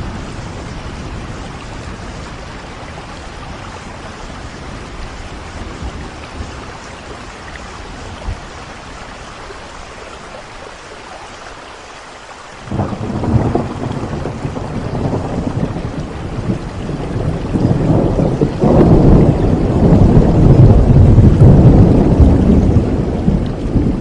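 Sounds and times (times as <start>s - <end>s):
steady rain falling: 0.0s - 24.0s
thunder rolling: 12.7s - 24.0s.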